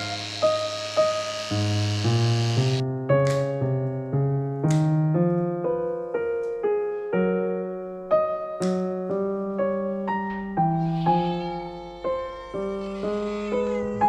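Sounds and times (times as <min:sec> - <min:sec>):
calm piano music: 0:00.0 - 0:14.0.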